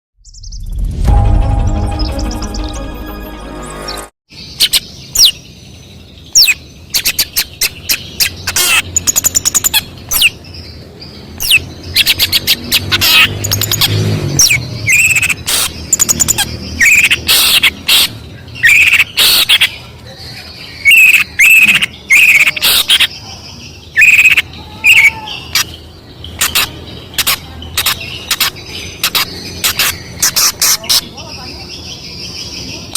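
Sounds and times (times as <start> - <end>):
music: 0.8 - 4.1
bird singing varied song: 4.3 - 32.9.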